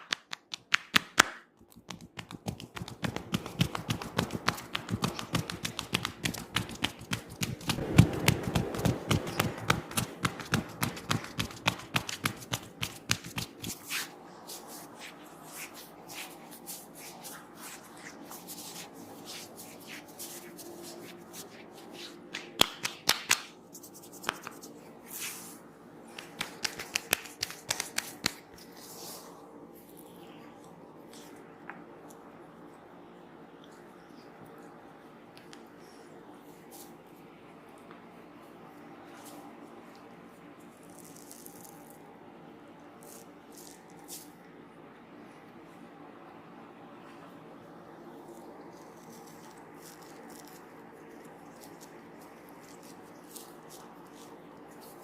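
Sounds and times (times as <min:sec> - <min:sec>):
hands tapping and patting head: 0:00.0 - 0:07.8, 0:08.5 - 0:14.1, 0:21.4 - 0:24.8, 0:26.1 - 0:28.7
hands rubbing head: 0:01.8 - 0:29.4.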